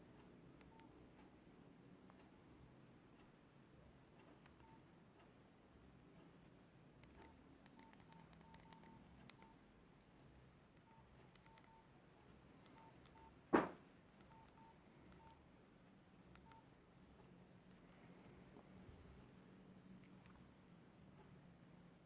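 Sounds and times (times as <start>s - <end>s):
keypad beeps: 0.6s - 1.0s, 4.4s - 4.9s, 7.0s - 9.6s, 10.8s - 11.9s, 12.6s - 13.4s, 14.2s - 15.4s, 16.3s - 16.7s
key clicks: 7.0s - 9.6s, 10.8s - 11.8s, 16.3s - 16.7s
loud sharp knock: 13.5s - 13.8s.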